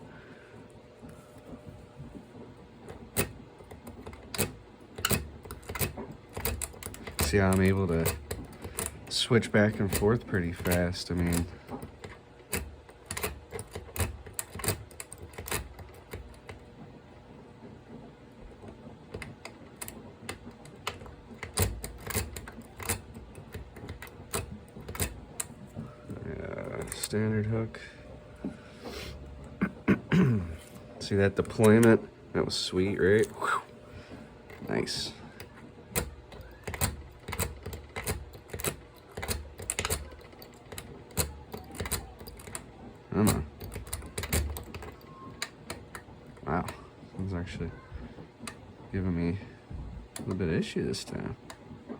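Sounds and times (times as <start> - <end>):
lock picks clicking: 9.9 - 16.6, 19.2 - 25.5, 35.9 - 42.6, 43.3 - 46.0.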